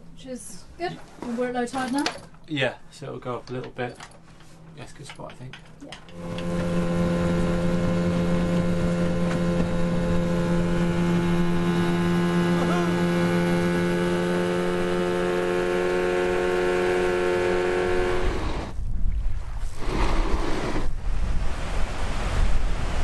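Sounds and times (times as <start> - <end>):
boat engine running: 6.0 - 18.8.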